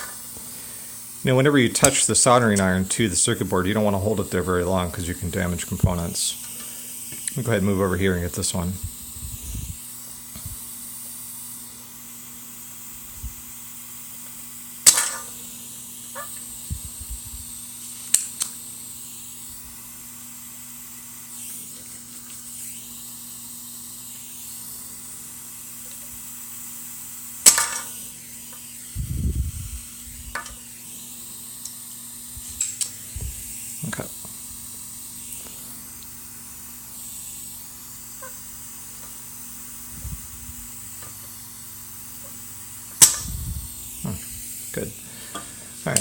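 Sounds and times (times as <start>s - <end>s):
steady low hum: 0.0s - 46.0s
solder sucker snapping: 14.8s - 15.4s, 17.8s - 18.6s, 30.3s - 30.6s, 32.4s - 33.4s, 43.0s - 43.3s.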